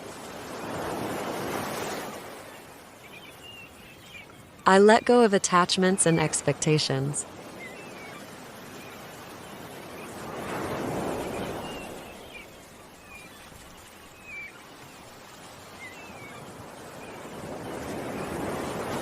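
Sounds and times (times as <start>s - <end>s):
ocean waves washing in: 0.0s - 19.0s
small birds chirping: 2.5s - 10.2s, 11.0s - 18.4s.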